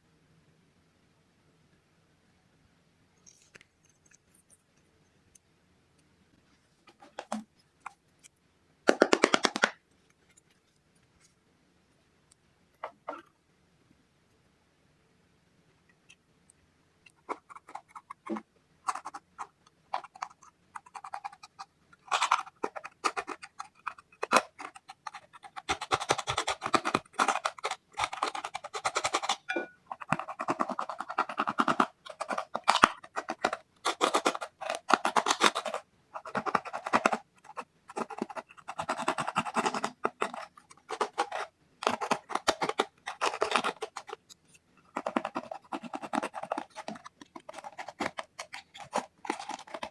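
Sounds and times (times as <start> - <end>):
slime squelching and popping: 8.9 - 9.8.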